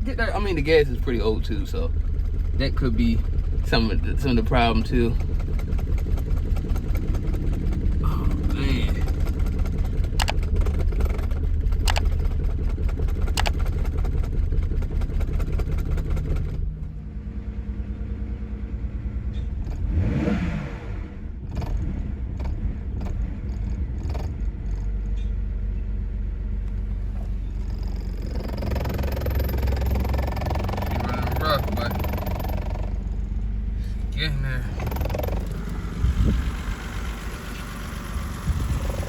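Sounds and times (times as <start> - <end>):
car engine running and revving: 0.0 - 39.0
sharp clicks: 5.1 - 14.4, 21.5 - 25.2.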